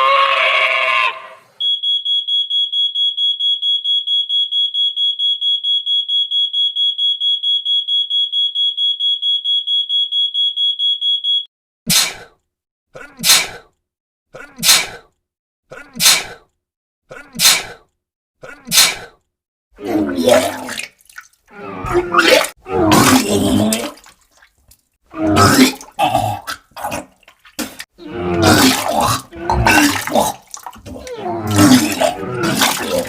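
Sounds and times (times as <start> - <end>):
smoke alarm beeping: 1.6 - 11.5
person sneezing: 11.9 - 12.4, 13.0 - 13.7, 14.4 - 15.1, 15.7 - 16.5, 17.1 - 17.8, 18.4 - 19.2.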